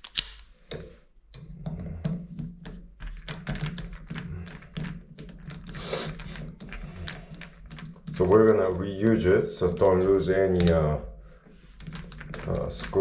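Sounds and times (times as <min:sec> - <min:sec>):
small clicks and taps of parts: 0:00.0 - 0:08.9.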